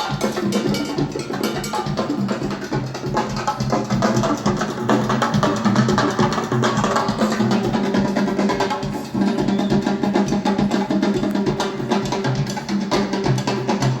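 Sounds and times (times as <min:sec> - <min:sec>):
music with drums from vinyl record: 0:00.0 - 0:14.0.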